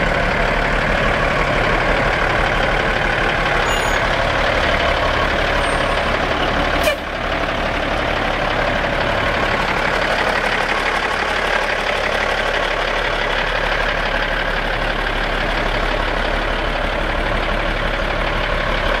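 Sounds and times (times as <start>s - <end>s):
diesel truck engine idling: 0.0s - 19.0s.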